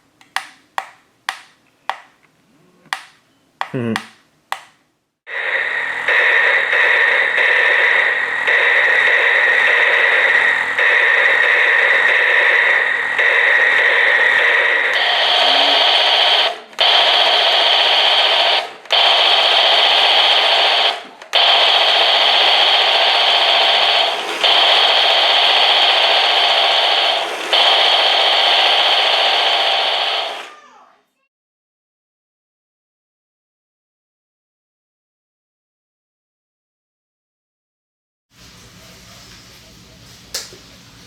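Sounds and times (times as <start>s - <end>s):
toy gun electronic buzzing: 6.1s - 30.6s.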